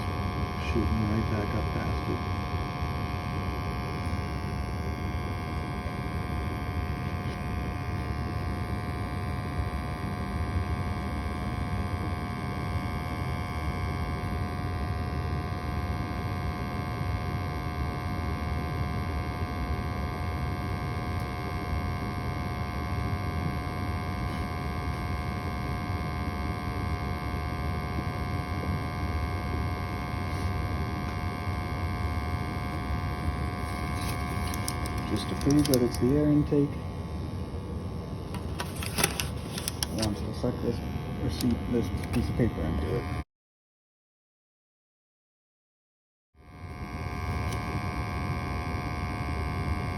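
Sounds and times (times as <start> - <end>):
gas furnace blower rumbling: 0.0 - 16.5, 28.5 - 43.1.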